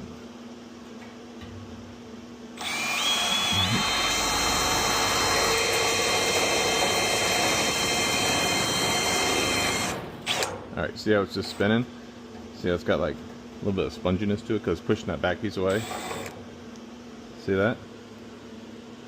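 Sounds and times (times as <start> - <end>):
power drill whining: 2.6 - 10.6, 15.7 - 16.4.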